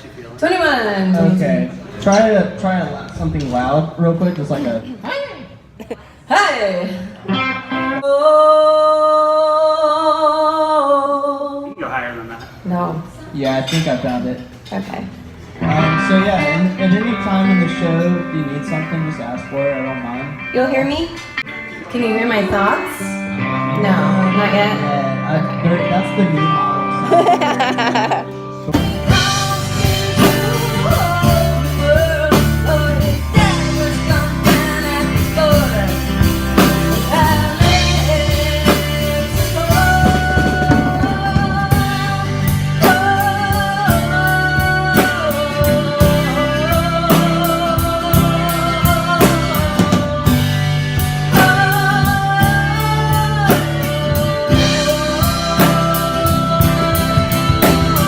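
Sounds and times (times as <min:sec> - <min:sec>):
live blues-rock band playing: 0:07.2 - 0:08.0, 0:15.0 - 0:58.0.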